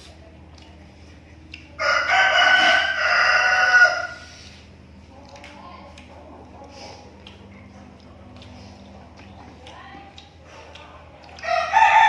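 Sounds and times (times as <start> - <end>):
rooster crowing: 1.8 - 4.3, 11.4 - 12.0.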